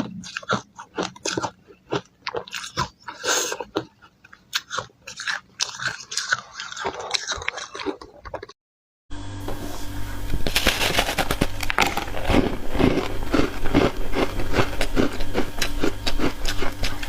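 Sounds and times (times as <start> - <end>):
chewing crunchy ice: 0.0 - 8.6, 10.5 - 17.0.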